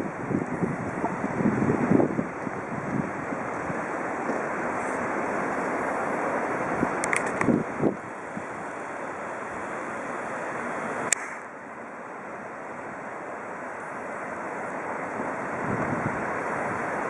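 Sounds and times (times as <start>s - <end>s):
wind rushing over microphone: 0.0s - 8.6s, 14.9s - 17.0s
sharp click: 11.1s - 11.4s.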